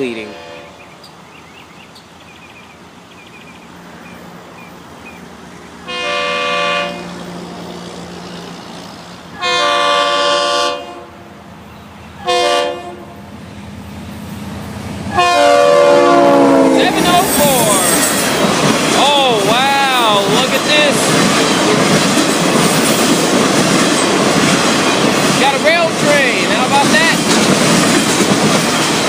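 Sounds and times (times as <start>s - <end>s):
locomotive air horn blasts: 0.2s - 0.8s, 5.9s - 7.2s, 9.4s - 11.2s, 12.2s - 13.1s, 15.1s - 18.0s
locomotive engine drone: 2.9s - 29.0s.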